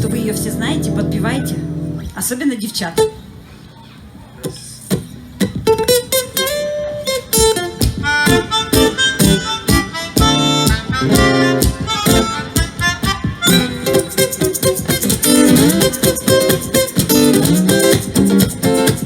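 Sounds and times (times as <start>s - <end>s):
acoustic guitar strumming: 0.0s - 2.1s, 4.4s - 19.0s
harmonica melody: 6.6s - 19.0s.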